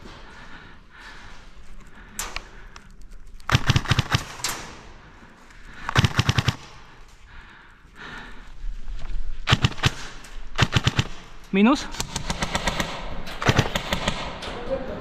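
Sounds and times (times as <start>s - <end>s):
airsoft gun firing bursts: 3.5s - 4.7s, 5.9s - 6.9s, 9.4s - 14.4s.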